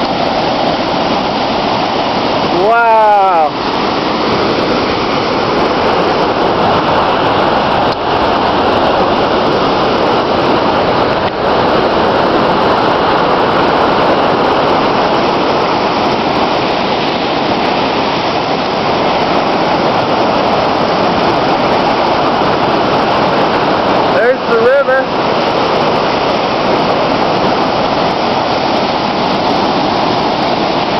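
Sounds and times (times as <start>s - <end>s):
water rushing through floodgates: 0.0s - 30.9s.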